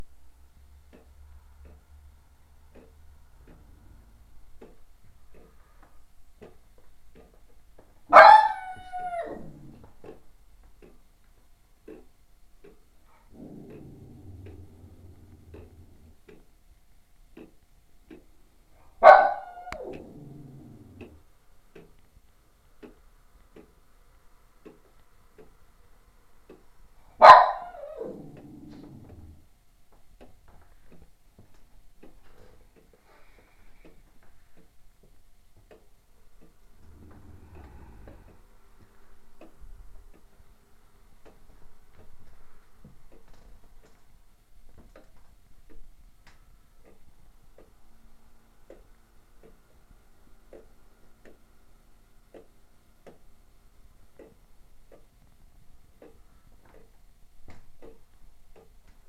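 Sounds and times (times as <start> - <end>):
clock ticking faintly: 0.0 - 59.0
mechanical clock ticking: 0.4 - 7.7, 10.0 - 18.7, 19.7 - 27.1.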